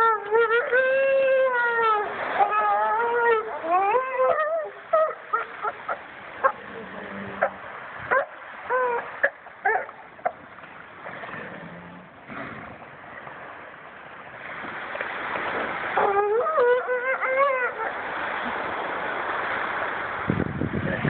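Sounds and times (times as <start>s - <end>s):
elephant seals calling: 0.0s - 10.4s, 15.7s - 18.6s.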